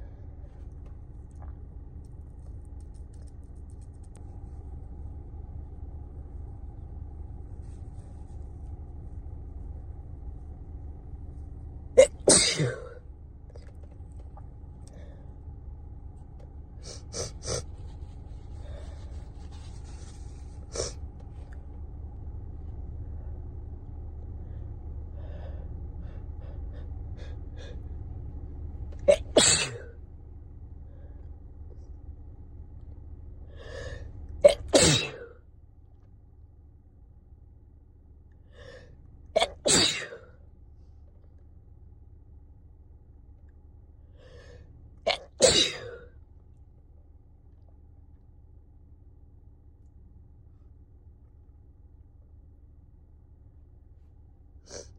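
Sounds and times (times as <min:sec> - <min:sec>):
person sneezing: 0:12.0 - 0:13.0, 0:29.0 - 0:29.9, 0:34.5 - 0:35.4, 0:39.4 - 0:40.3, 0:45.1 - 0:46.0.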